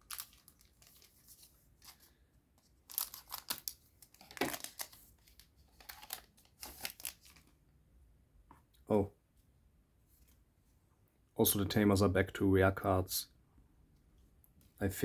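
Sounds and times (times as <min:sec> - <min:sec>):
foil wrapper crinkling and tearing: 0:00.0 - 0:02.2, 0:02.8 - 0:07.5.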